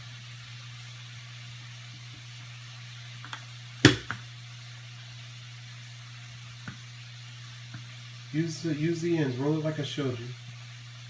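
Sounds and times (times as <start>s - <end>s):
steady low hum: 0.0s - 11.0s
rolling pin knocking on a counter: 3.8s - 4.2s.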